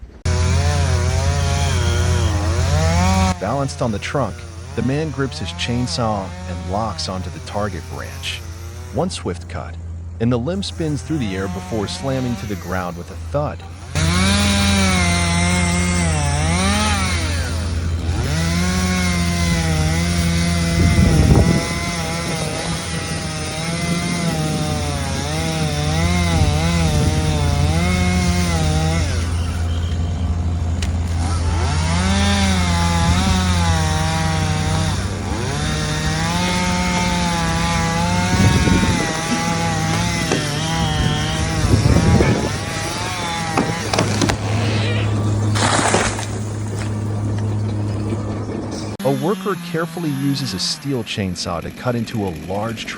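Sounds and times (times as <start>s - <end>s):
chainsaw cutting wood: 0.1s - 9.4s, 10.5s - 52.9s
heavy low thumps: 31.2s - 45.6s.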